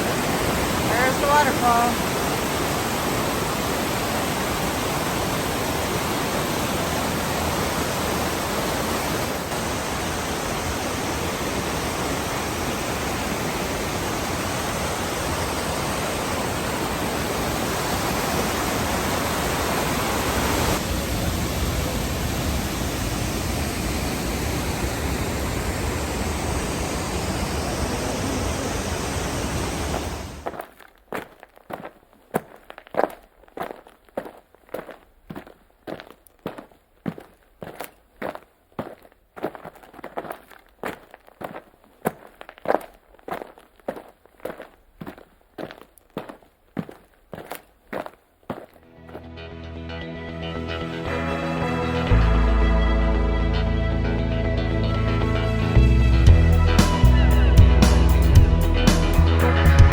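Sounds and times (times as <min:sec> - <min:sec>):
waterfall rushing: 0:00.0 - 0:30.4.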